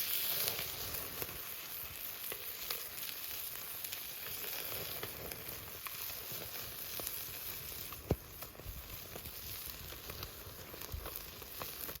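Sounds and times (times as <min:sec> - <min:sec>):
fire crackles: 0:00.0 - 0:12.0
fish sizzling over campfire: 0:00.0 - 0:12.0
sharp pop: 0:08.0 - 0:08.3.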